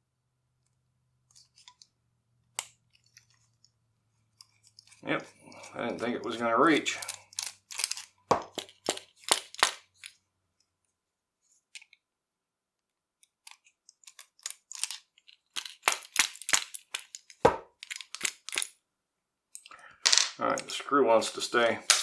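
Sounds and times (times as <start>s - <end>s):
metal tools clicking on padlock: 6.9s - 10.2s, 13.4s - 18.8s.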